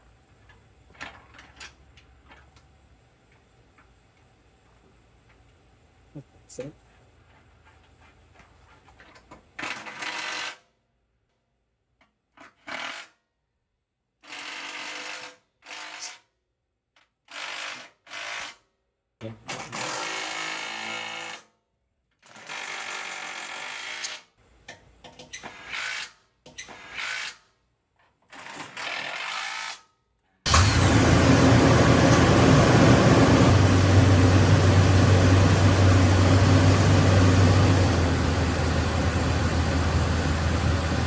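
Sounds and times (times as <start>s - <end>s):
power tool bursts: 30.5s - 40.8s
vehicle engine humming: 30.5s - 41.0s.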